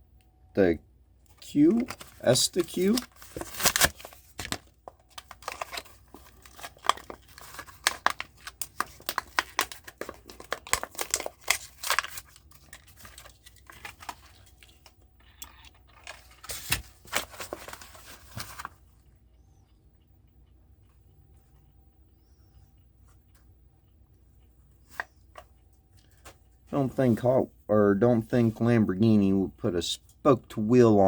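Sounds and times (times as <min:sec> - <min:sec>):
plastic pack crinkling and tearing: 0:01.4 - 0:18.7.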